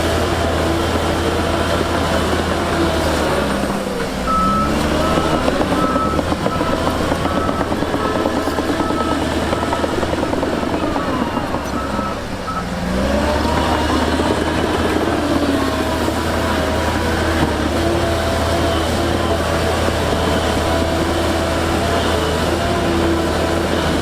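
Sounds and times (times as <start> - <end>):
diesel engine of heavy machinery: 0.0 - 24.0
reversing alarm beeping: 4.3 - 14.4.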